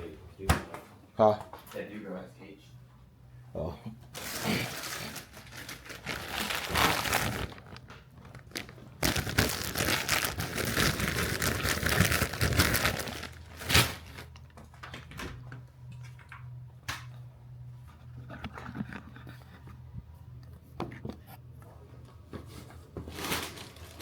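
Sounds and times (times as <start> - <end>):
low steady hum: 0.0 - 24.0
packaging crinkling and rustling: 4.1 - 15.1, 22.5 - 24.0.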